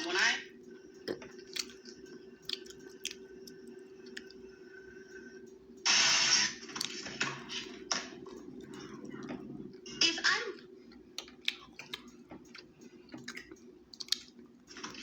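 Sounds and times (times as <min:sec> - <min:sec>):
low hum: 0:00.0 - 0:15.0
person chewing: 0:01.0 - 0:04.5, 0:08.0 - 0:09.8, 0:10.6 - 0:14.9.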